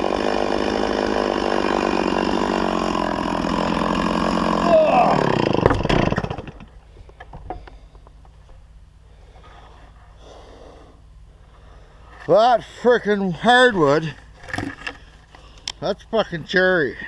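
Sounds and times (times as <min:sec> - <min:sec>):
chainsaw cutting wood: 0:00.0 - 0:06.8.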